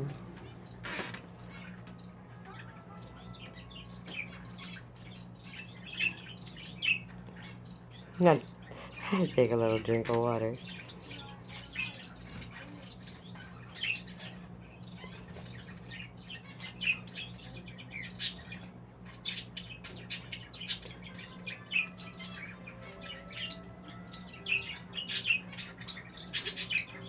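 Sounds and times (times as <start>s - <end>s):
budgerigars chirping: 0.4s - 27.0s.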